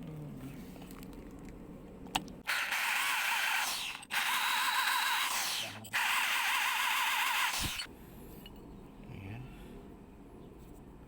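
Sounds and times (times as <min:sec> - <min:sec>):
electric drill whining: 0:02.5 - 0:07.9.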